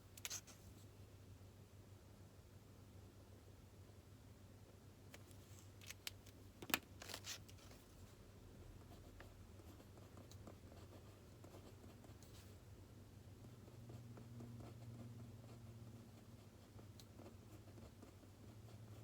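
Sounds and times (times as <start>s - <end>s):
clicks and rustles at a desk: 5.1s - 7.8s.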